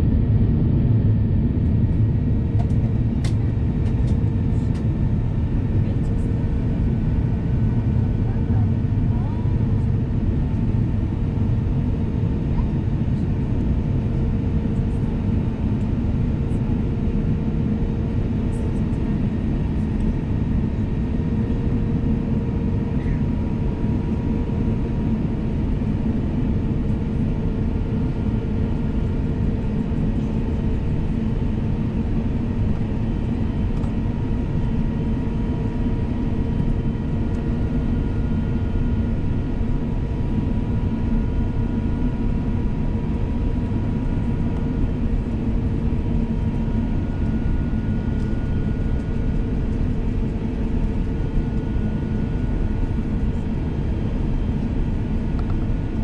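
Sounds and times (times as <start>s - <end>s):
jet engine cabin rumble: 0.0s - 56.0s.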